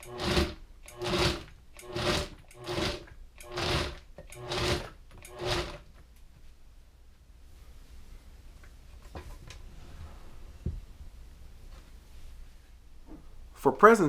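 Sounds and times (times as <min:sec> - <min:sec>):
blender motor pulsing: 0:00.0 - 0:05.8.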